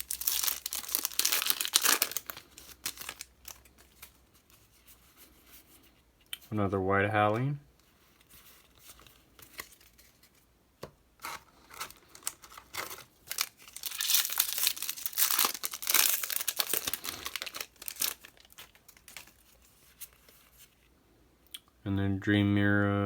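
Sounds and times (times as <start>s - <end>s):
wrapper crinkling: 0.0s - 4.6s, 11.2s - 20.8s.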